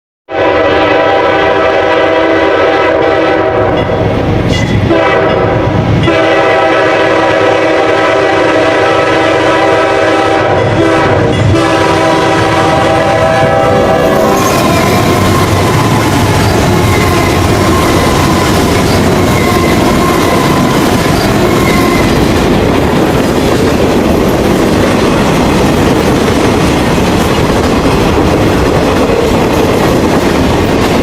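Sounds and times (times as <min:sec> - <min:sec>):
locomotive air horn chord: 0:00.3 - 0:04.1, 0:04.8 - 0:22.2
passing train rumble: 0:00.3 - 0:31.0.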